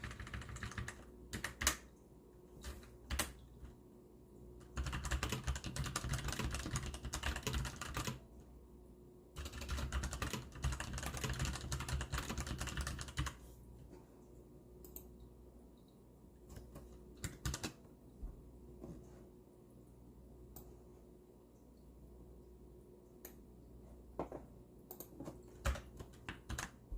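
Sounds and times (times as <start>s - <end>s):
mechanical keyboard typing: 0.0s - 1.9s, 2.6s - 3.7s, 4.6s - 8.2s, 9.4s - 13.4s, 16.5s - 17.8s, 24.9s - 26.8s.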